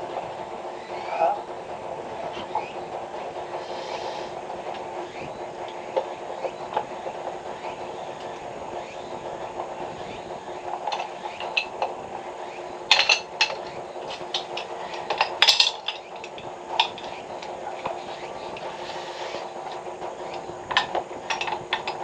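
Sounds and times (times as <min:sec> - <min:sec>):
steady running noise: 0:00.0 - 0:22.0
metal tools clinking: 0:12.9 - 0:19.4.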